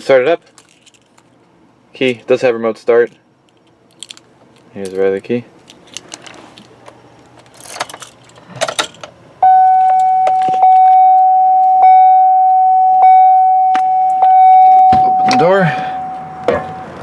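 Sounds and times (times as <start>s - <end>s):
keys jangling: 0.4s - 1.3s, 3.0s - 9.0s
steady electronic tone: 9.4s - 17.0s.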